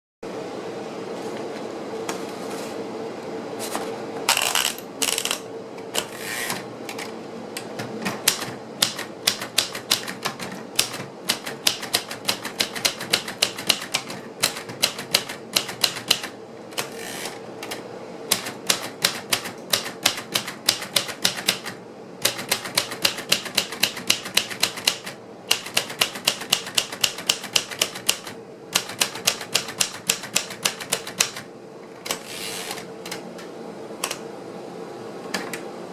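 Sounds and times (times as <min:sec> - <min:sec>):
typewriter keystrokes: 0:08.0 - 0:17.0, 0:17.6 - 0:33.2.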